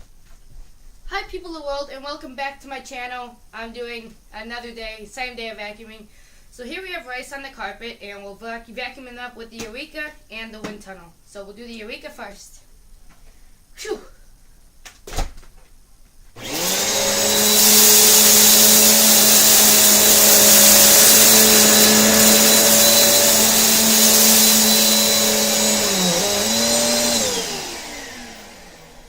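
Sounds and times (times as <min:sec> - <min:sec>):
vacuum cleaner motor whining: 0:16.4 - 0:29.0.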